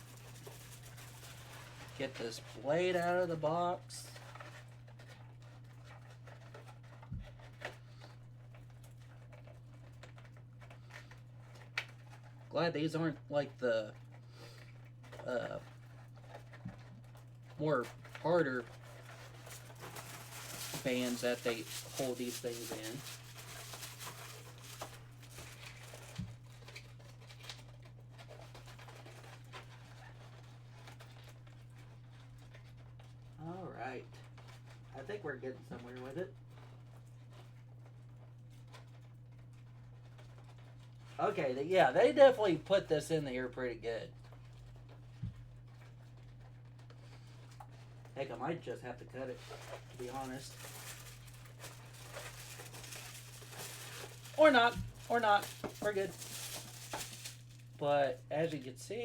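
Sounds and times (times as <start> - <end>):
cardboard packaging rustling: 0.0 - 13.3, 13.9 - 33.4, 44.1 - 57.8.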